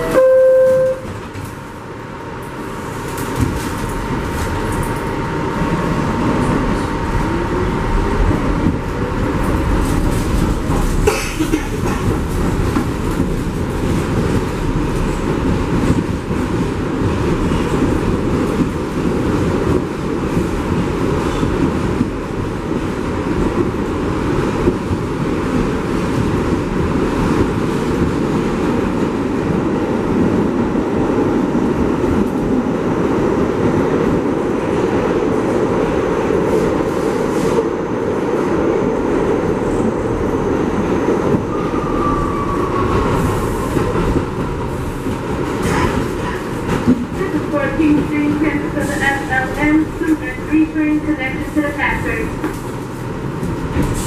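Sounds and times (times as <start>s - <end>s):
subway train wheels rumbling on rails: 0.0s - 54.0s.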